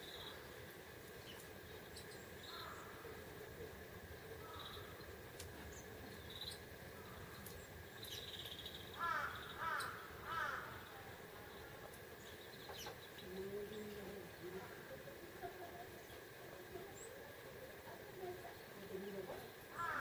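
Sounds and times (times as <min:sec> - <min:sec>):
small birds chirping: 0:00.0 - 0:20.0
crow cawing: 0:02.5 - 0:03.1, 0:04.4 - 0:04.9, 0:09.0 - 0:11.0, 0:19.7 - 0:20.0.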